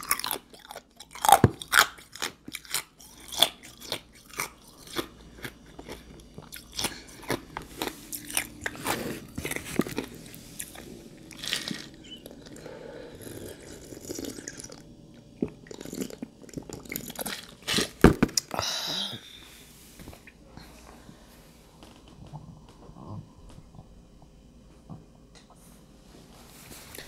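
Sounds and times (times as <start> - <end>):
ice crunching while chewed: 0.0 - 18.6.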